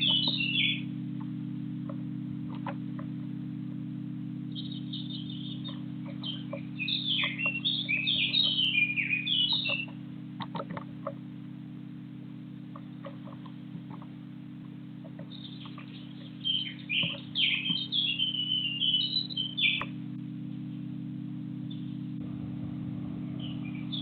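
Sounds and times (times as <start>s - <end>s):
birds chirping: 0.0s - 24.0s
steady low hum: 0.0s - 24.0s
faint ticks: 1.2s - 3.2s, 9.5s - 11.2s, 12.7s - 16.4s.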